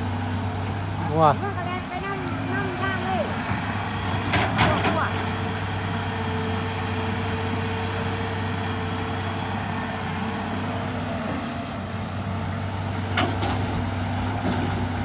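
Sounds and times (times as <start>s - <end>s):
heavy diesel engine running: 0.0s - 15.0s.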